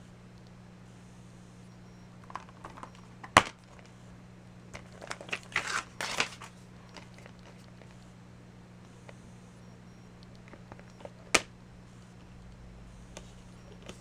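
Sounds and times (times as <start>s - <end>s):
low electrical hum: 0.0s - 14.0s
plastic packaging clicks: 4.7s - 7.7s
packaging crinkling and rustling: 4.7s - 8.0s.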